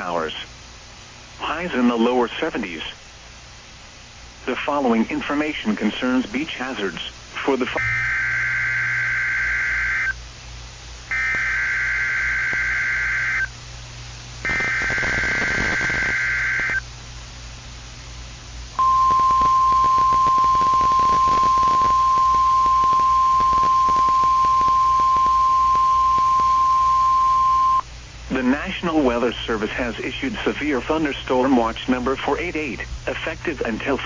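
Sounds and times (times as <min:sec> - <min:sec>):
faint static crackle: 0:00.0 - 0:34.0
warbling digital data tones: 0:07.7 - 0:10.2, 0:14.5 - 0:16.8, 0:18.8 - 0:27.8
steady warning alarm tone: 0:07.8 - 0:10.2, 0:11.1 - 0:13.6, 0:14.4 - 0:16.9, 0:18.8 - 0:27.9.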